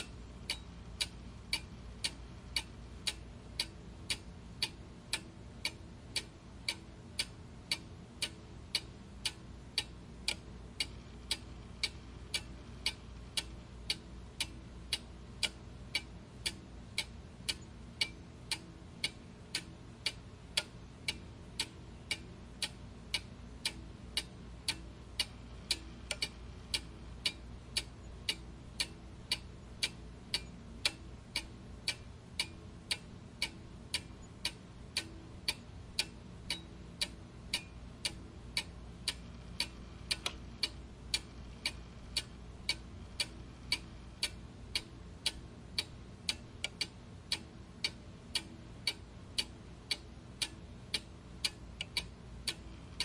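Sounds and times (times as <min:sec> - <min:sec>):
clock ticking: 0:00.0 - 0:53.0
faint low hum: 0:00.0 - 0:53.0.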